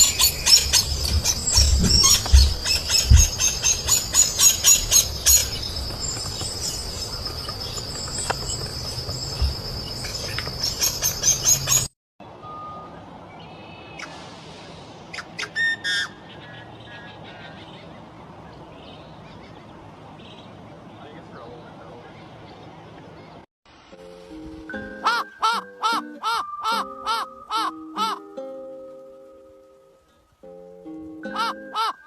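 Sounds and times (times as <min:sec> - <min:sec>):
bird calling in high pulses: 0:25.0 - 0:28.2.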